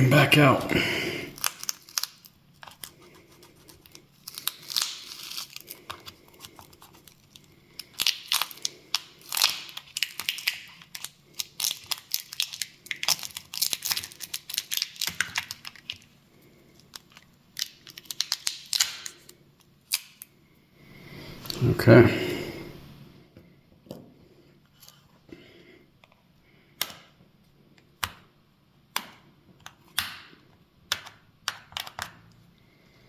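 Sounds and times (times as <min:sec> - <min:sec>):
adhesive crackling and tearing: 0:01.3 - 0:20.3.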